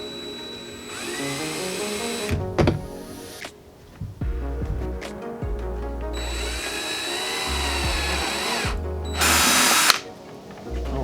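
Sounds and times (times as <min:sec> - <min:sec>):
power drill boring through plastic: 0:00.0 - 0:02.4, 0:06.2 - 0:10.0
background music with low beat: 0:00.0 - 0:11.0.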